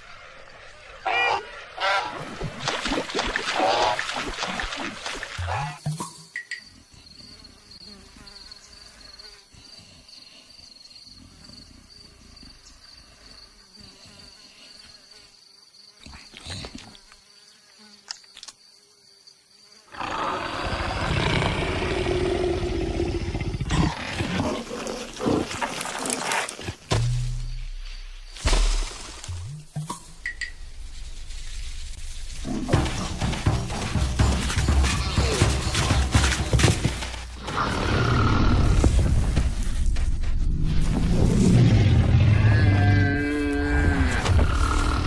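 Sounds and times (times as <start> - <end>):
rough animal roar: 0.8 - 2.2, 19.9 - 26.6, 37.3 - 39.0, 41.5 - 45.0.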